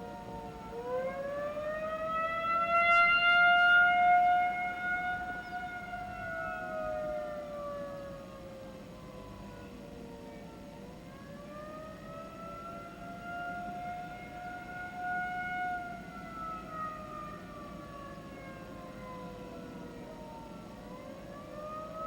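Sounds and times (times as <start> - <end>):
civil defense sirens wailing: 0.0 - 22.0.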